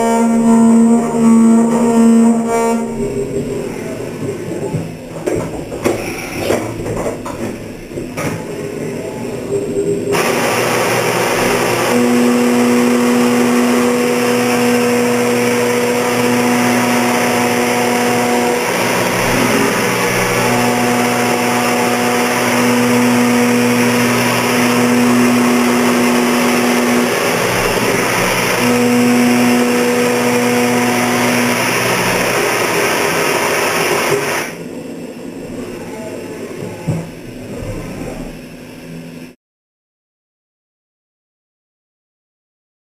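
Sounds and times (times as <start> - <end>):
milling machine cutting steel: 8.4 - 39.2.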